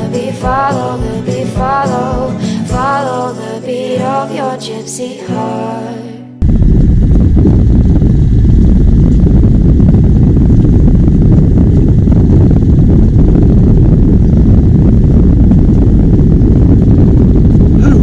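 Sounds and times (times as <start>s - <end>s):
wind noise on microphone: 0.0s - 3.2s, 6.4s - 18.0s
boat motor rumbling: 6.4s - 18.0s.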